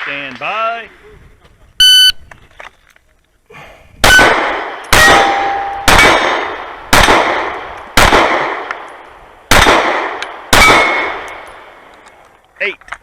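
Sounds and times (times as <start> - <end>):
pistol shots: 4.0 - 12.0
steel plate ringing: 5.1 - 6.1.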